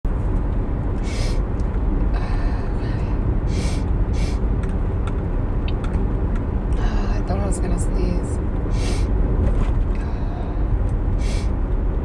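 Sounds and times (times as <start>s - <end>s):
steady low rumble: 0.1s - 12.0s
person sniffing through the nose: 1.0s - 1.4s, 3.5s - 4.4s, 8.7s - 9.1s, 11.2s - 11.5s.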